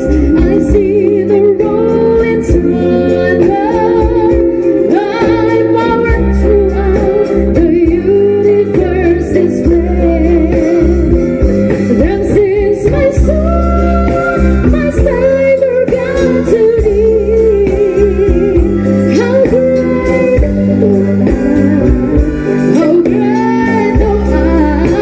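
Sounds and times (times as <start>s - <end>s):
person singing with vibrato: 0.0s - 25.0s
steady bass line: 0.0s - 25.0s.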